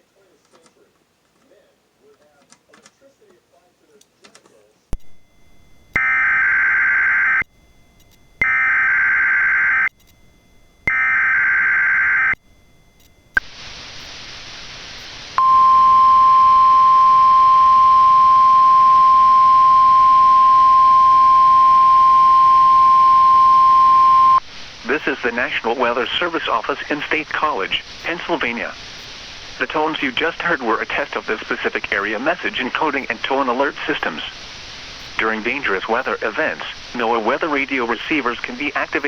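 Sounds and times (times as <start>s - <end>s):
steady warning alarm tone: 5.0s - 33.4s
click: 8.0s - 8.2s, 9.9s - 10.2s, 13.0s - 13.5s
digital data tone bursts: 15.4s - 34.4s.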